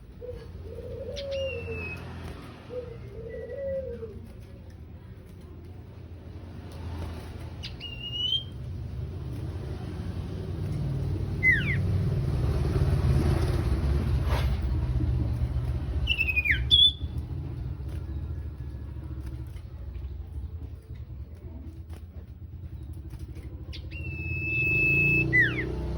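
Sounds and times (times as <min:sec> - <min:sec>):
low rumble of passing vehicle: 0:00.0 - 0:25.9
bird calls: 0:00.1 - 0:04.2, 0:11.3 - 0:12.0, 0:15.1 - 0:18.3, 0:22.6 - 0:25.9.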